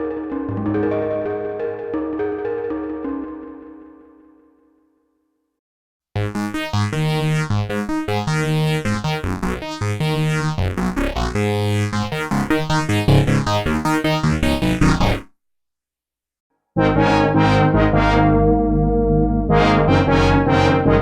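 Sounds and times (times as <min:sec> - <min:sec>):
analog synthesizer sequence: 0:06.3 - 0:15.2.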